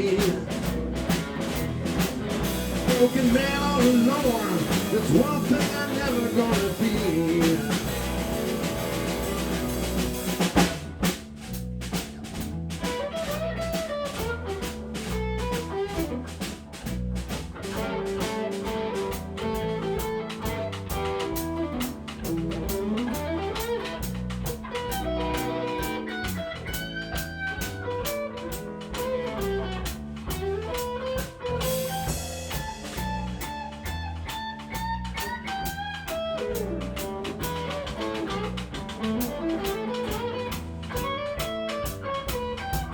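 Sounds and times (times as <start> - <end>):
low bass line: 0.0 - 12.8
loud drum hit: 0.0 - 13.0
blues guitar lead bending notes: 0.0 - 42.9
drum kit beat: 0.0 - 42.9.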